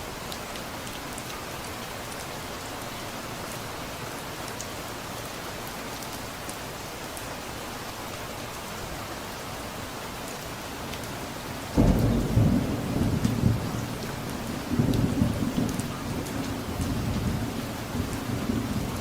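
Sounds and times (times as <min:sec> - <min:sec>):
steady rain falling: 0:00.0 - 0:19.0
thunder clap and rumble: 0:11.8 - 0:19.0.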